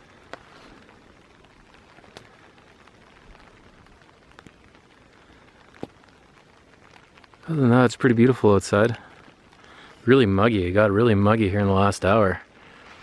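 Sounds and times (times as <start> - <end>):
light rain patter: 0.0 - 13.0.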